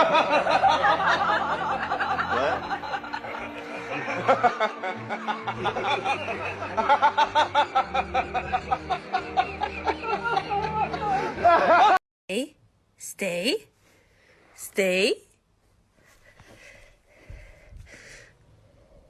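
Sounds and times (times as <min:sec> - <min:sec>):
people laughing: 0:00.0 - 0:12.0.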